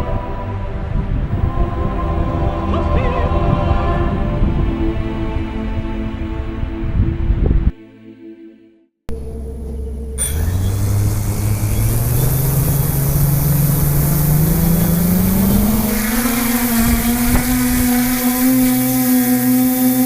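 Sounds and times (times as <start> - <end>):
quadcopter motors humming: 9.1 - 20.0
propeller rushing hiss: 10.2 - 20.0.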